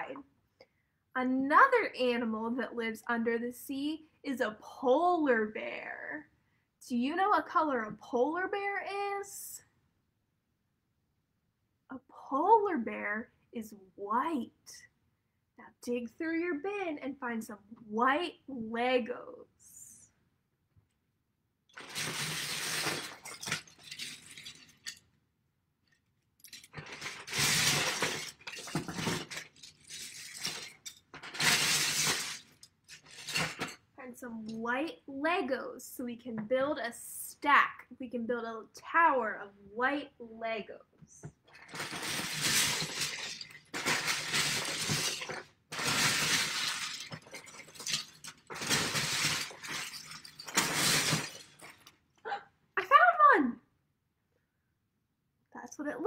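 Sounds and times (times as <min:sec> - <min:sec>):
plastic bricks clattering: 0:21.7 - 0:25.1, 0:26.4 - 0:33.8, 0:41.5 - 0:52.0.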